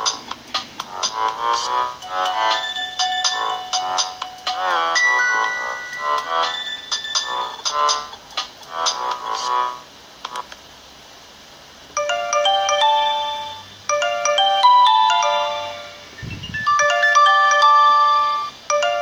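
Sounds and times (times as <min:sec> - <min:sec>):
mobile phone ringtone melody: 0:01.8 - 0:08.0, 0:12.0 - 0:19.0.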